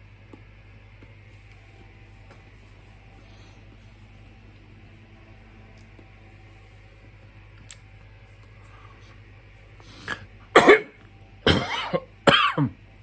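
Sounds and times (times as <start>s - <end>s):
person coughing: 10.0s - 12.8s.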